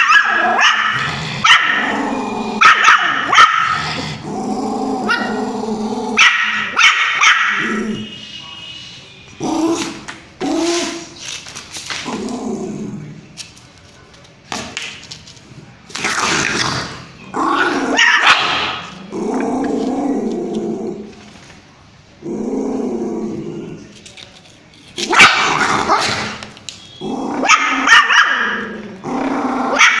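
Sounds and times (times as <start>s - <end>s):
puppy barking and growling: 0.0s - 8.1s, 16.0s - 21.1s, 25.0s - 26.4s, 27.0s - 30.0s.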